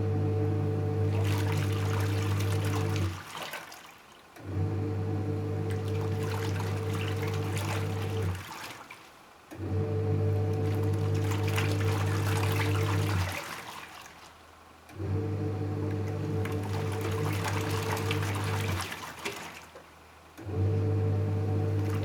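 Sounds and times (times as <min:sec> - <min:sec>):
washing machine motor humming: 0:00.0 - 0:03.8, 0:04.4 - 0:14.2, 0:14.8 - 0:22.0
water sloshing: 0:01.0 - 0:04.4, 0:05.6 - 0:09.4, 0:10.5 - 0:14.5, 0:16.0 - 0:20.1, 0:21.7 - 0:22.0.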